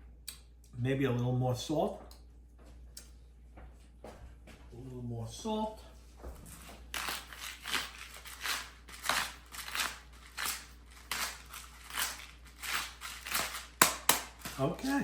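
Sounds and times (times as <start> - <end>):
salt grinder crunching: 6.6 - 14.9.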